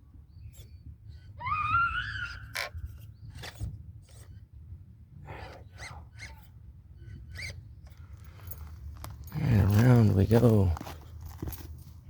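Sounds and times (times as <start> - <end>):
small electric motor whining: 5.3 - 8.0
tyres scraping on bark: 5.3 - 11.8.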